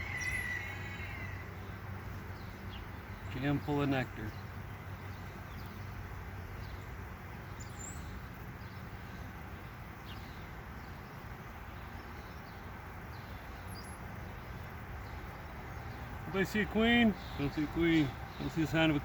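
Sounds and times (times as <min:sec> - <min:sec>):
honeybees buzzing: 0:11.8 - 0:19.0.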